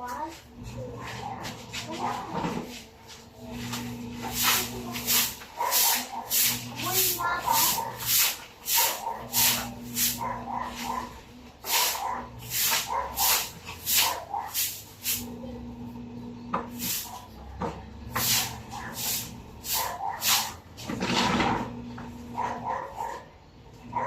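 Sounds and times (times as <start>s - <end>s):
dog barking: 5.6s - 6.4s, 7.4s - 8.0s, 8.8s - 11.2s, 11.9s - 14.6s, 17.0s - 17.3s, 19.7s - 20.6s, 22.3s - 24.0s.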